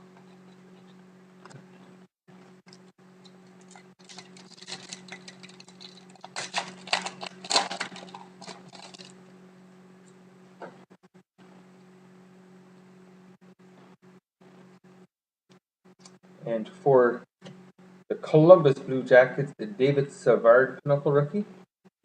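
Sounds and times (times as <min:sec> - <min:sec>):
steady low hum: 0:00.0 - 0:15.1
wrapper crinkling and rustling: 0:03.5 - 0:09.2.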